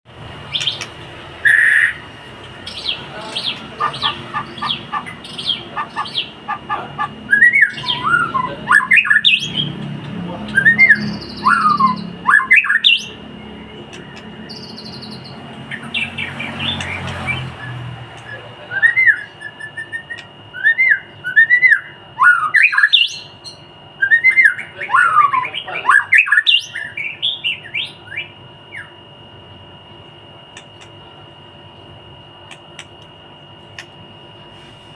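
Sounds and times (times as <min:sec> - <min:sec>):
bird singing whistled song: 0:00.5 - 0:02.0, 0:02.6 - 0:03.6, 0:07.3 - 0:09.8, 0:10.5 - 0:29.0.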